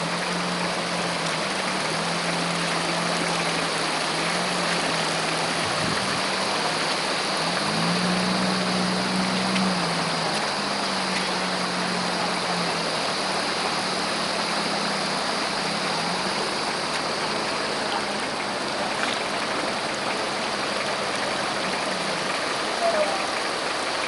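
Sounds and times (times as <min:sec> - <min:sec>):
off-road vehicle engine hum: 0:00.0 - 0:24.0
steady rushing noise: 0:00.0 - 0:24.0.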